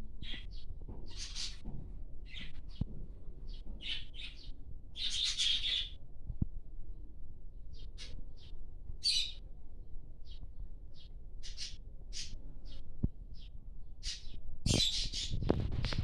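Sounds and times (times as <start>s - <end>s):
dove chick squeaking: 0.2s - 1.6s, 14.0s - 16.0s.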